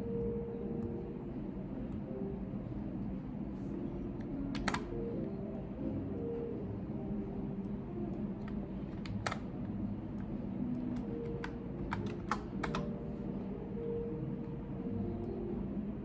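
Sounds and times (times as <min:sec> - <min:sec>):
low room hum: 0:00.0 - 0:16.0
typing on computer keyboard: 0:04.2 - 0:05.1, 0:08.4 - 0:09.6, 0:10.2 - 0:13.0.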